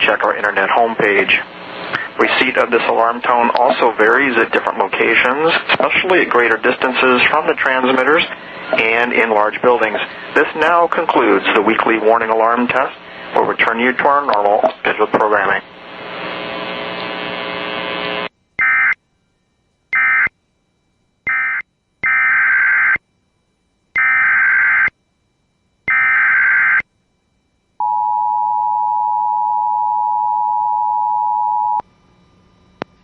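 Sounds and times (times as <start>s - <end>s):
buzzy noise: 15.2s - 19.0s.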